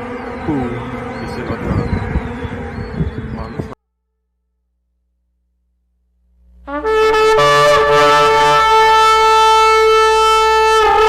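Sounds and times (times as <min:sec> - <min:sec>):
brass-like chord drone: 0:00.0 - 0:03.8, 0:06.6 - 0:11.0.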